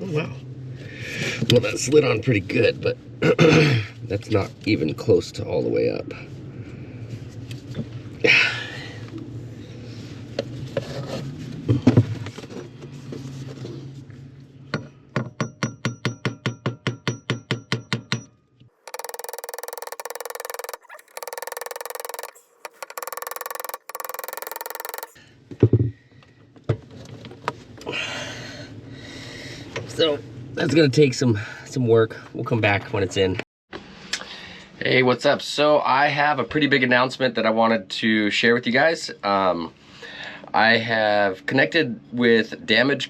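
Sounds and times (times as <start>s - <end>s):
quick even taps: 18.9s - 25.1s
knocks and clunks fitting motor: 18.9s - 25.2s.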